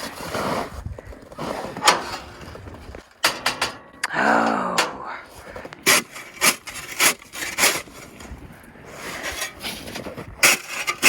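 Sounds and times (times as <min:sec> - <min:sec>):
footsteps crunching in frozen snow: 0:00.0 - 0:03.2.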